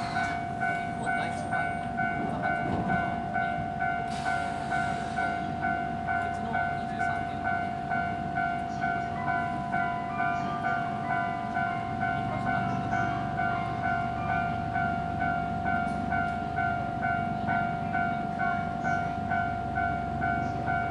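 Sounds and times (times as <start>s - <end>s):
level-crossing warning bell: 0.0s - 20.9s.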